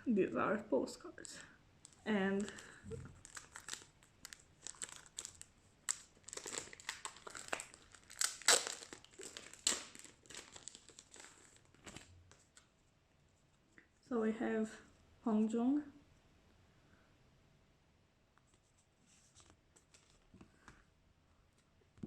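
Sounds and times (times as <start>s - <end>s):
packaging crinkling and rustling: 1.8s - 12.7s, 19.3s - 20.3s.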